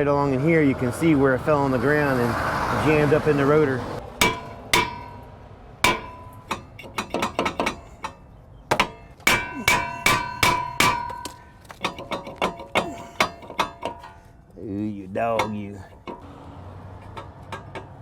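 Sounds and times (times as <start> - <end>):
hammer striking metal rotor: 4.2 - 14.2.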